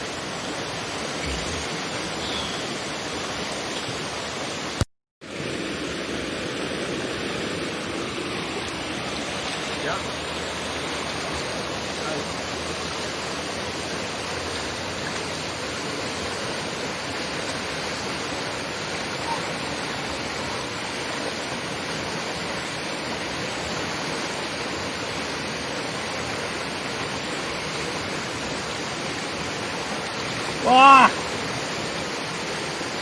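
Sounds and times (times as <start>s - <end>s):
mountain river rushing: 0.0s - 33.0s.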